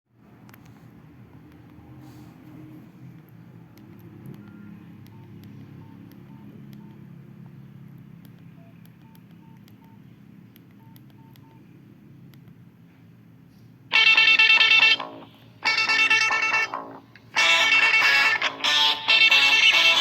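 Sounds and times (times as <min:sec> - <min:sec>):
phone key-tone beeps: 0:04.4 - 0:07.0, 0:08.6 - 0:10.0, 0:10.8 - 0:11.7.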